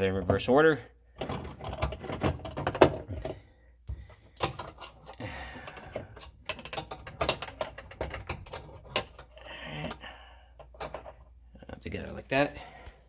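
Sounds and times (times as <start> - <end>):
plastic parts clicking and knocking: 1.1 - 11.3.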